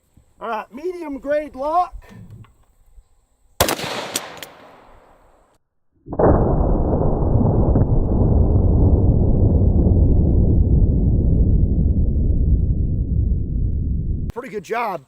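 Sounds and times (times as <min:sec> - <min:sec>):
shotgun shot: 0:03.6 - 0:05.0
low rushing noise: 0:06.2 - 0:14.3.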